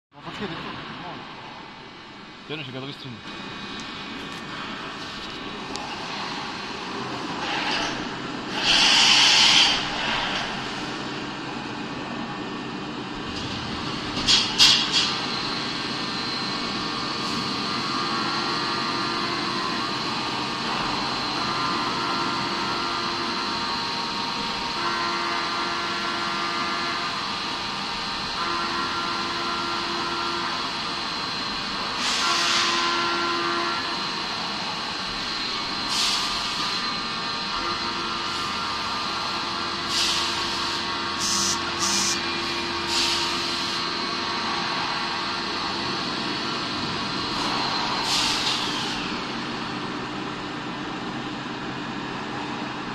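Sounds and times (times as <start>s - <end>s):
milling machine hum and whine: 0.2s - 52.9s
short hissing bursts: 8.5s - 9.9s, 39.9s - 42.2s
lower motor tones: 15.0s - 52.8s.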